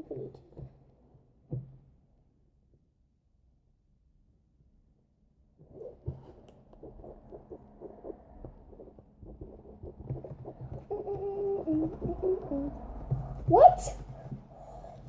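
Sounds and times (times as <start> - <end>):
pitched voice-like sound: 10.9 - 15.0.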